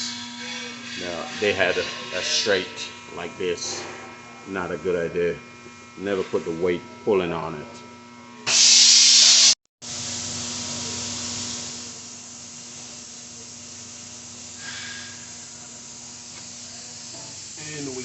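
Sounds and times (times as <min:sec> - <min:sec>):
compressed air hissing: 0:08.5 - 0:18.0.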